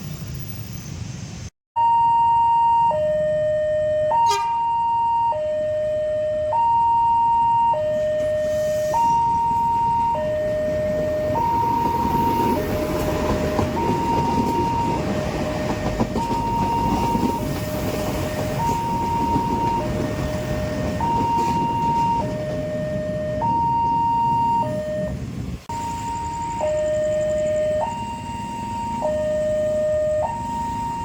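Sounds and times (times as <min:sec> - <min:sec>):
level crossing two-tone alarm: 0:01.8 - 0:31.0
train passing rumble: 0:07.9 - 0:31.0.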